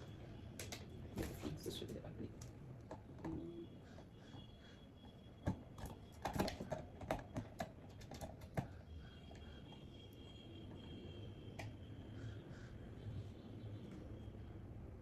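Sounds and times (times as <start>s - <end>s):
plastic fan parts clicking: 0.5s - 0.9s, 5.4s - 8.8s.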